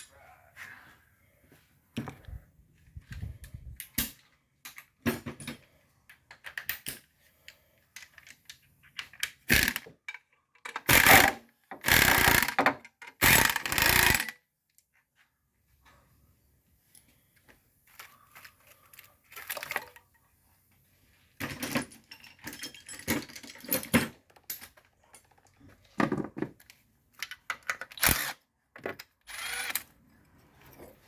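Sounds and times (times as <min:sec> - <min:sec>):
power tool bursts: 0:09.5 - 0:09.8, 0:10.9 - 0:12.6, 0:13.2 - 0:14.3, 0:29.3 - 0:29.8
metal tools clinking and clanking: 0:17.9 - 0:20.2, 0:21.4 - 0:28.1.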